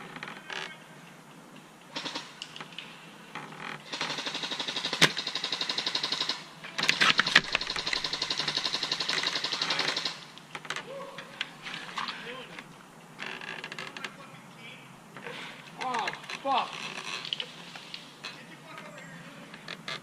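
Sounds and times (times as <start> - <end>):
airsoft gun firing rapidly: 3.9 - 10.2.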